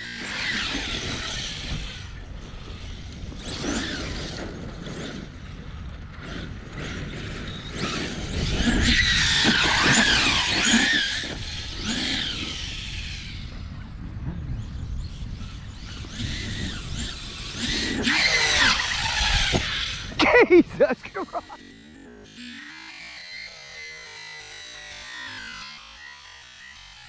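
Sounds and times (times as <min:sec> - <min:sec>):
electric motor whining: 0:00.0 - 0:27.0.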